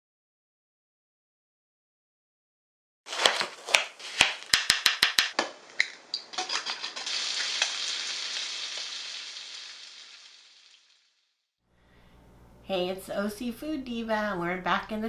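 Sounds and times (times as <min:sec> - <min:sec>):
food sizzling in a hot pan: 0:06.6 - 0:11.2.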